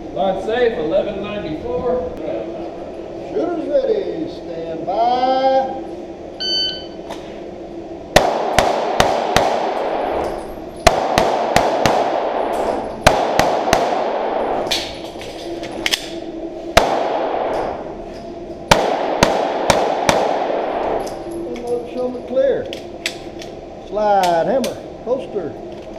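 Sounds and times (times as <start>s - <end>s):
pistol shots with echo: 8.1s - 10.2s, 10.8s - 15.0s, 16.8s - 17.8s, 18.7s - 21.0s.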